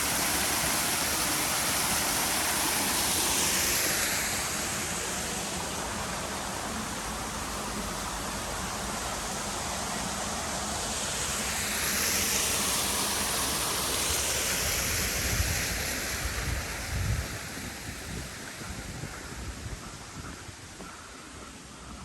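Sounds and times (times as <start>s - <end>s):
waterfall rushing: 0.0s - 18.9s
wind rumbling on microphone: 14.5s - 22.0s.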